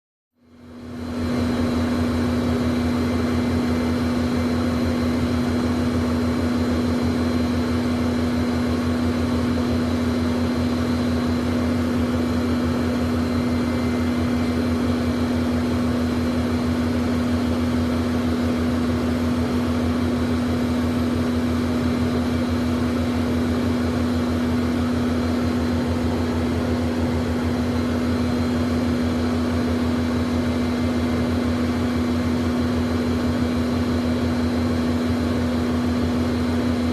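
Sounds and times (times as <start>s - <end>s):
jet engines idling hum: 0.4s - 36.9s
faint high whine: 10.4s - 19.4s.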